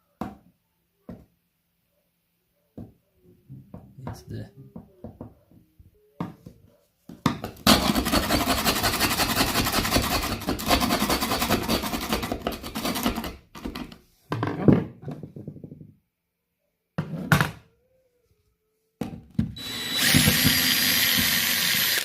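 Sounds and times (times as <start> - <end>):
knock: 2.8 - 5.6
tool grinding wood: 7.7 - 13.4, 19.6 - 22.0.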